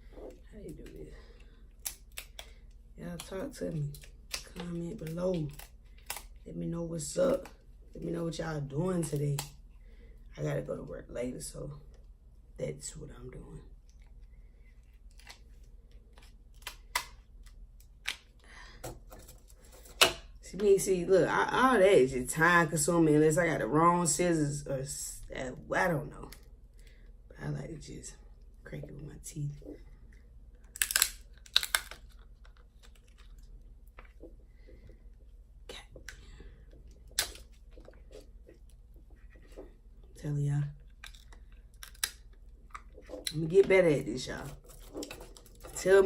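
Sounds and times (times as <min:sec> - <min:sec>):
scissors cracking shellfish shells: 0:01.8 - 0:02.6, 0:05.4 - 0:06.3, 0:30.6 - 0:33.3, 0:41.0 - 0:43.3.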